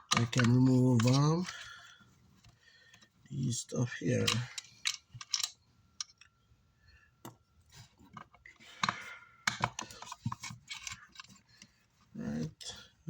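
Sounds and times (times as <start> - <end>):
light clicks of small parts: 0.1 - 1.7, 4.2 - 6.4.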